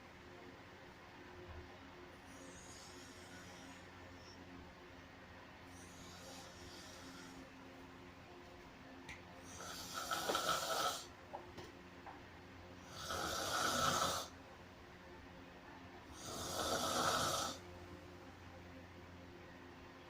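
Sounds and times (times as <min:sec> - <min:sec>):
person snoring: 0:05.7 - 0:07.4, 0:09.5 - 0:11.1, 0:12.8 - 0:14.3, 0:16.1 - 0:17.6.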